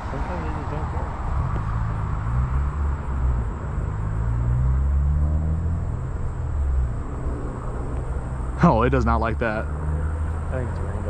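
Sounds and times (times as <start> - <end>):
passing vehicle engine rumble: 0.0 - 11.0.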